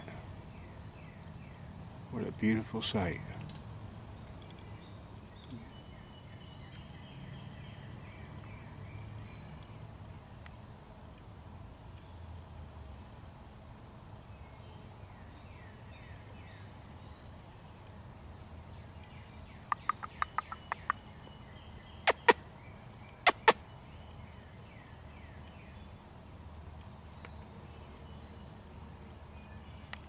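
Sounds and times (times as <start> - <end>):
woodland birds calling: 19.0 - 25.9
sharp clicks: 19.7 - 21.0, 22.1 - 22.4, 23.3 - 23.6.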